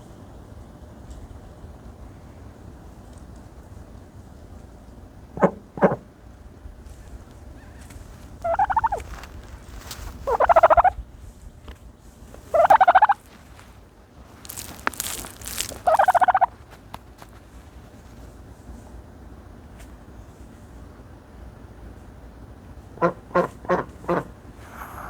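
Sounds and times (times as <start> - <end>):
turkey rattling calls: 8.4 - 9.2, 10.2 - 11.0, 12.5 - 13.4, 14.4 - 16.6
rustling hiss: 12.0 - 19.0.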